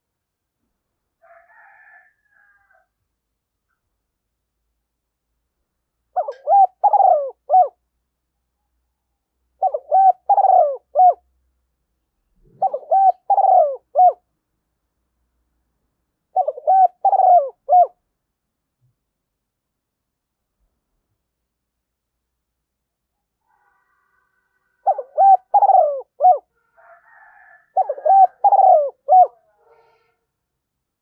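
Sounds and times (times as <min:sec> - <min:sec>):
dove cooing: 0:06.2 - 0:07.8, 0:09.6 - 0:11.2, 0:12.4 - 0:14.2, 0:16.3 - 0:18.0, 0:24.8 - 0:30.0.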